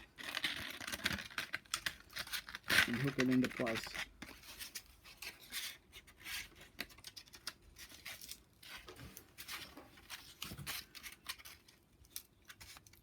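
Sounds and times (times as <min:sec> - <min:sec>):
sandpaper rustling and scraping: 0:02.7 - 0:06.6.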